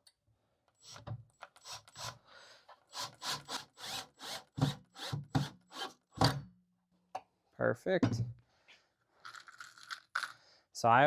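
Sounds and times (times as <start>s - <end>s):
screw rasping into wood: 2.9s - 6.0s.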